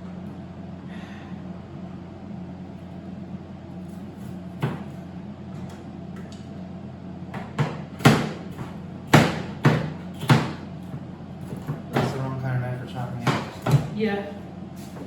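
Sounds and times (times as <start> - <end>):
knife chopping on cutting board: 7.4 - 10.6, 13.2 - 13.9.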